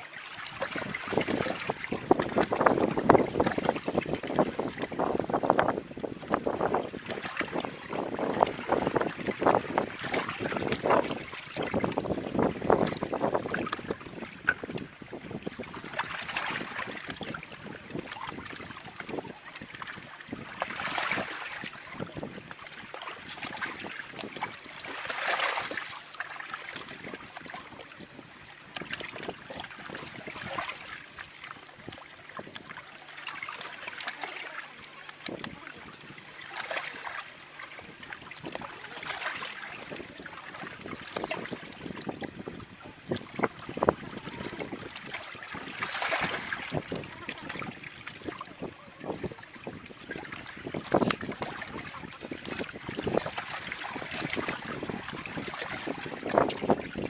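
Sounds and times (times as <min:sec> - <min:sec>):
small waves lapping: 0:00.0 - 0:57.0
wind over open water: 0:00.0 - 0:57.0
wind buffeting microphone: 0:00.5 - 0:25.9, 0:37.7 - 0:57.0.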